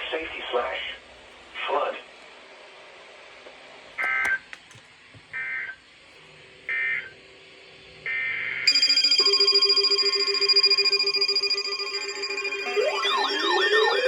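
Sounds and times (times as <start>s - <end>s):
pulsing electronic alert tone: 8.7s - 14.0s
shrill digital data bursts: 8.7s - 14.0s.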